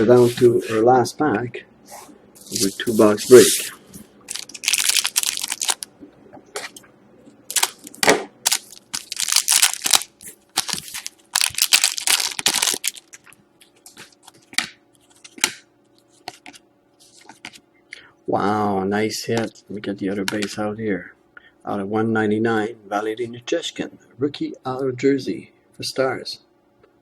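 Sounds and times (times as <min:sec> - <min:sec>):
card pack wrapper crinkling: 0:04.3 - 0:05.9, 0:07.5 - 0:14.4.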